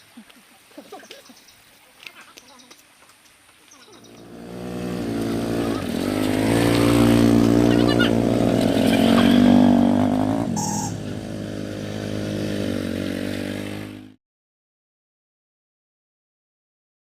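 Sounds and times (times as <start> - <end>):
small engine running: 4.0 - 14.1.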